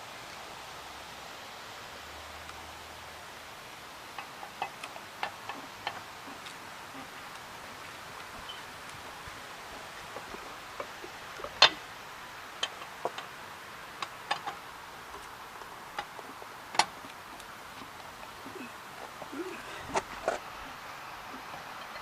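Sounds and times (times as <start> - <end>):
steady hiss: 0.0 - 22.0
sharp clicks and knocks: 4.2 - 6.6, 14.0 - 18.3.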